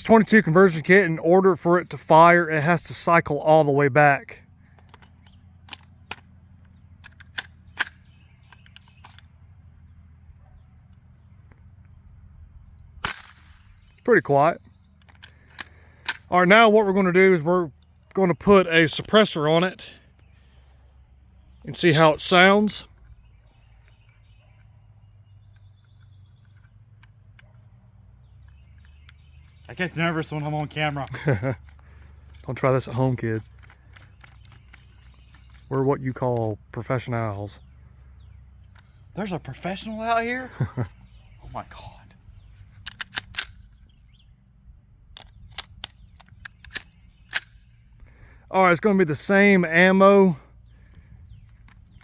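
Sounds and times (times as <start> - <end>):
rifle action clicking: 4.8 - 6.4, 7.0 - 9.3, 13.0 - 13.9, 15.0 - 16.3, 42.8 - 43.8, 45.1 - 47.7.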